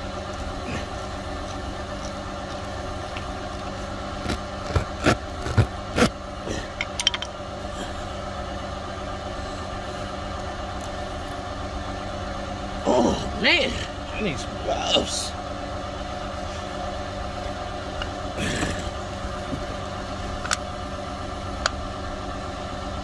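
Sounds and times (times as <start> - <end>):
engine idling: 0.0 - 23.0
tire plug tools clicking and scraping: 0.2 - 7.4, 17.9 - 20.7.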